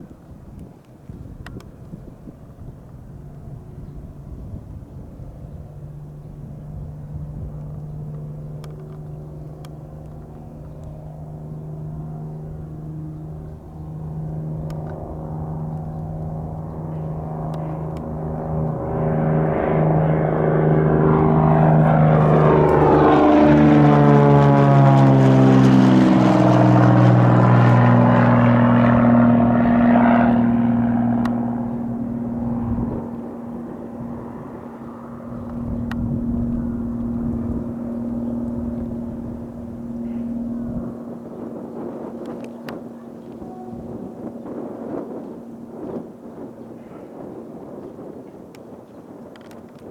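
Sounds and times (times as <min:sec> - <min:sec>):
propeller plane taking off: 0:00.0 - 0:49.9.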